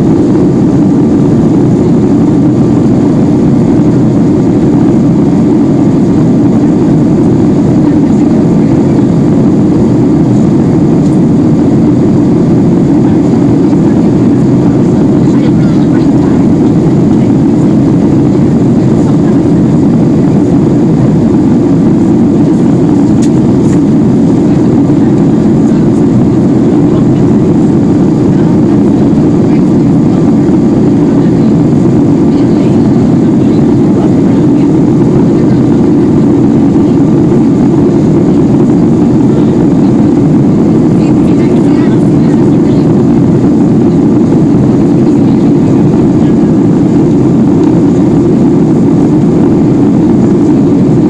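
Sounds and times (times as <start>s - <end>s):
jet engines roaring: 0.0s - 51.0s.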